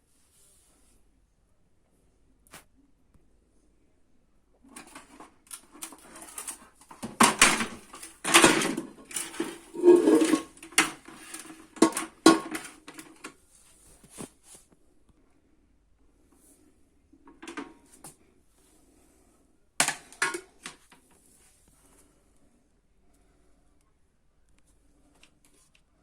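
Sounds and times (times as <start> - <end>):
plastic parts clicking and rattling: 4.7 - 13.4.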